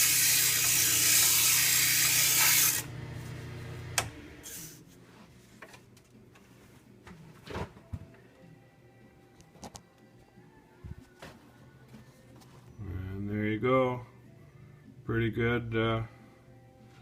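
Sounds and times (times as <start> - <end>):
sandpaper hissing on spinning wood: 0.0 - 2.8
lathe motor hum: 0.0 - 4.6.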